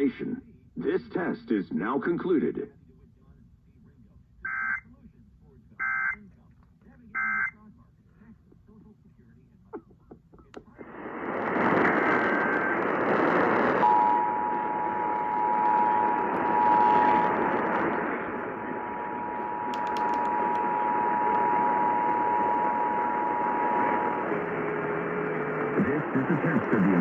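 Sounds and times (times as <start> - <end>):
loud radio static: 0.0 - 27.0
two-tone alert signal over radio: 7.2 - 7.5.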